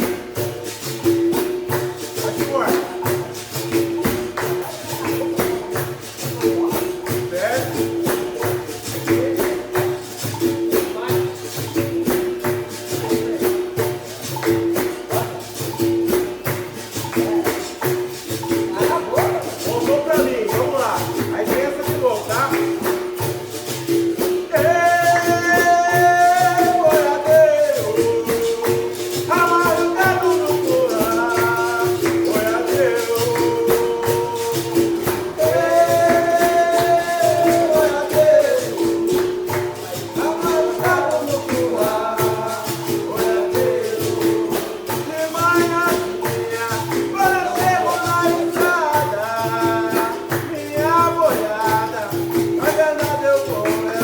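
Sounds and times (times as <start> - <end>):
berimbau: 0.0 - 54.0
pandeiro: 0.0 - 54.0
shaken rattle: 0.0 - 54.0
person singing: 24.5 - 54.0.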